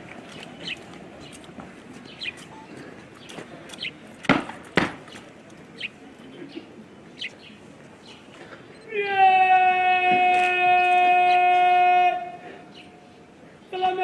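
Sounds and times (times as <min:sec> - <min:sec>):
bird chirping: 0:00.2 - 0:04.2, 0:05.0 - 0:08.9
loud sharp thumps: 0:04.2 - 0:05.1.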